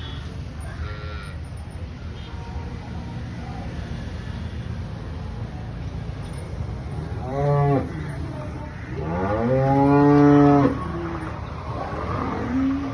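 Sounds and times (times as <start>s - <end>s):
cow mooing: 7.2s - 8.1s, 8.9s - 11.2s.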